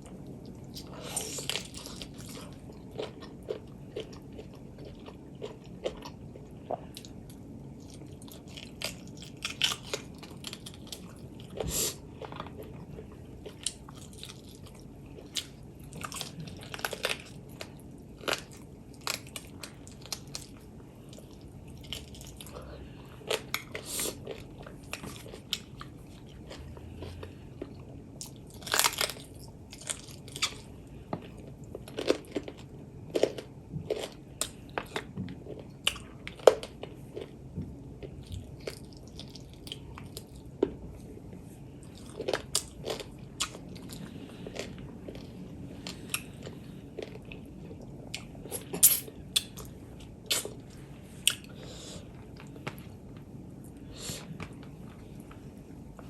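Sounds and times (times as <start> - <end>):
person chewing and biting food: 0.6 - 7.2, 41.8 - 52.8.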